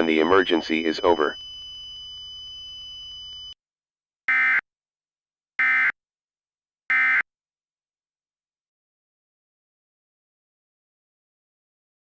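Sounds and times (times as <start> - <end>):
digital data tone bursts: 0.0 - 1.4
faint steady high tone: 0.0 - 3.6.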